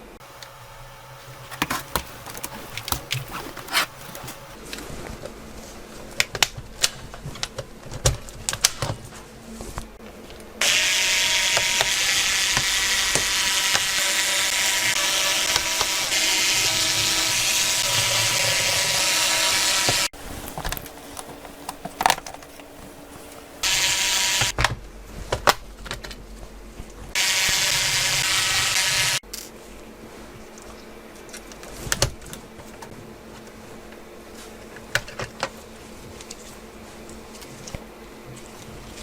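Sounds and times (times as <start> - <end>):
small motor whirring: 10.6 - 20.1, 23.6 - 24.5, 27.2 - 29.2.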